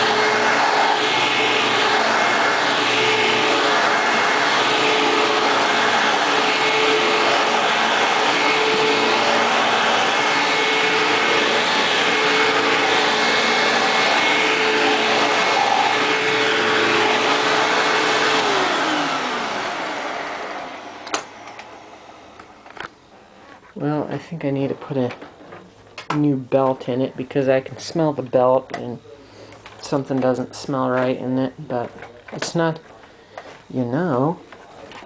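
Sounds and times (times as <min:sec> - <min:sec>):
vacuum cleaner motor whine: 0:00.0 - 0:23.6.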